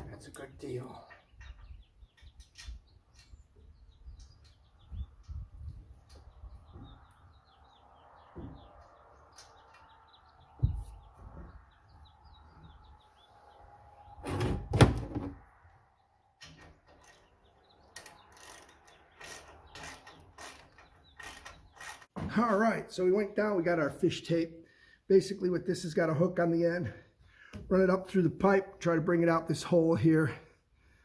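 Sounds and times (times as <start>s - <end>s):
small birds chirping: 0.0s - 14.2s, 15.5s - 22.1s
sharp clicks and rattles: 16.4s - 22.2s.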